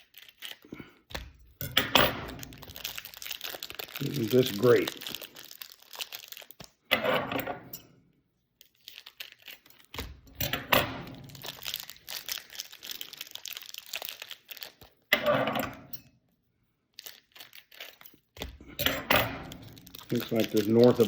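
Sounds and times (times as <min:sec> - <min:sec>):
wrappers tearing and crinkling: 0:00.0 - 0:06.9, 0:08.6 - 0:15.9, 0:16.9 - 0:21.0
cards shuffled and handled: 0:02.1 - 0:06.8, 0:19.7 - 0:21.0.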